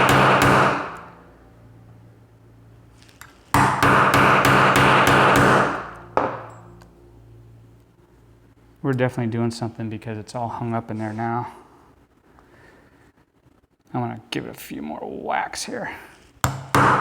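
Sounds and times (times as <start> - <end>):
hammer striking steel punch: 0.0 - 1.1, 3.5 - 6.6, 16.4 - 17.0.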